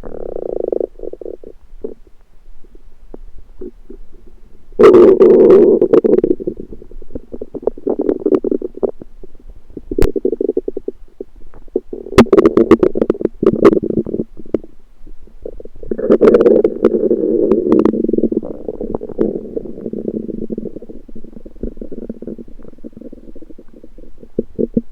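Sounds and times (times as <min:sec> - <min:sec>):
stomach rumbling and gurgling: 0:00.0 - 0:24.9
stomach pops: 0:09.9 - 0:10.9, 0:11.5 - 0:14.6.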